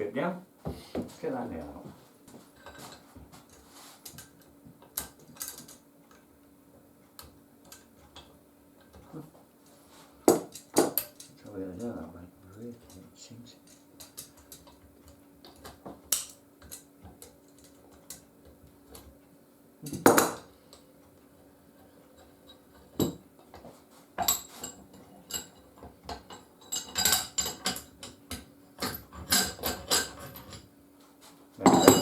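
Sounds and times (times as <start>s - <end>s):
metal tools clinking on nail: 31.6s - 32.0s.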